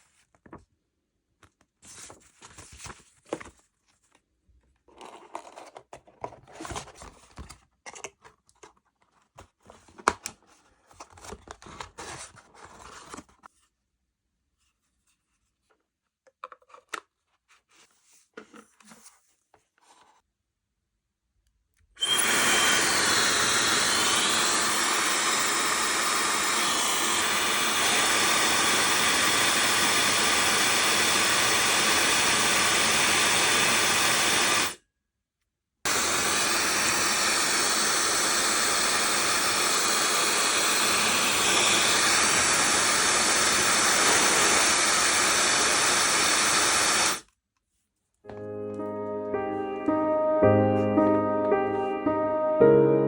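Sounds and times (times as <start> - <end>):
hair dryer running: 22.0 - 34.8, 35.9 - 47.2.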